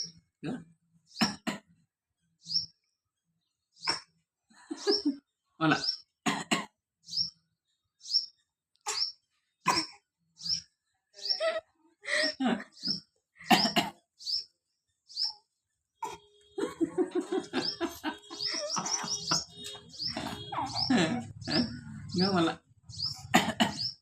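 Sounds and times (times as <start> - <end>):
baby coughing: 6.3 - 6.7, 8.9 - 9.1, 9.7 - 10.0, 13.5 - 14.0, 16.0 - 16.8, 18.3 - 21.7, 23.2 - 24.0.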